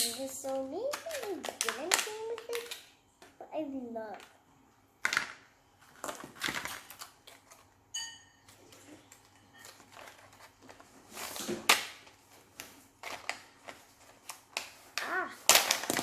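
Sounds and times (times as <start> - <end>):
plastic toy pieces clicking: 0.0 - 2.8.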